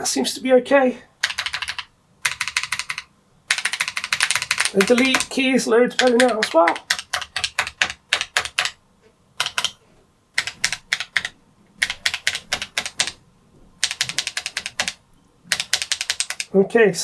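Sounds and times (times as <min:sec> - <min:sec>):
keyboard key clicks: 0:01.2 - 0:05.3, 0:06.0 - 0:08.8, 0:09.4 - 0:09.8, 0:10.4 - 0:13.2, 0:13.8 - 0:16.5.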